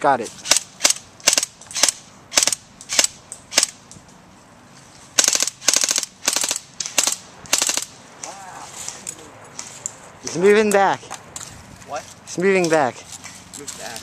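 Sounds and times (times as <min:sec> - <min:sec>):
airsoft rifle firing: 0:00.4 - 0:03.8, 0:05.2 - 0:08.0.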